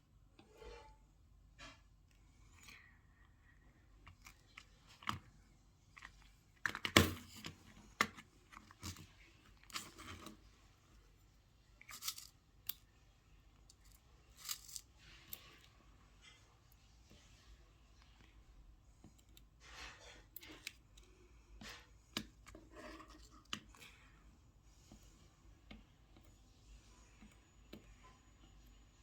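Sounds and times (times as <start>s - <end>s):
small objects clicking and rustling: 11.8s - 12.8s, 13.7s - 15.7s.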